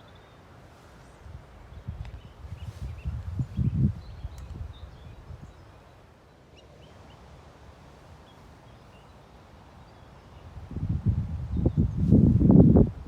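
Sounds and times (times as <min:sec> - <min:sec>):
wind buffeting microphone: 0:01.2 - 0:05.7, 0:10.4 - 0:13.0.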